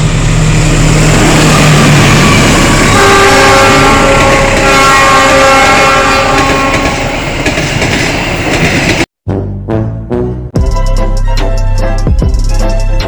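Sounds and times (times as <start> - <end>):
passing train rumble and clatter: 0.0 - 9.1
locomotive horn chord: 1.2 - 7.1.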